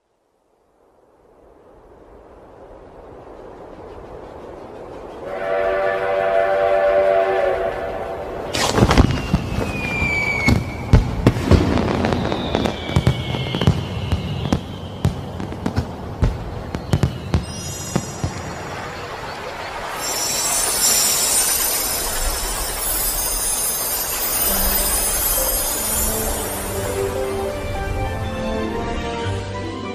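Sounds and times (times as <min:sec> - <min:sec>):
horn chord like a train horn: 0:05.3 - 0:08.4
falling firework whistles: 0:05.3 - 0:28.1
firework bangs and crackles: 0:08.5 - 0:28.2.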